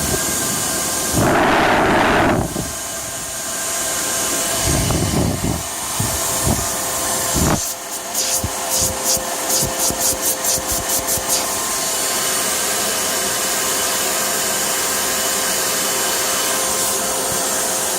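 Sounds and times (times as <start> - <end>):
faint steady whine: 0.0 - 9.5
air leak hissing from engine: 2.3 - 17.9.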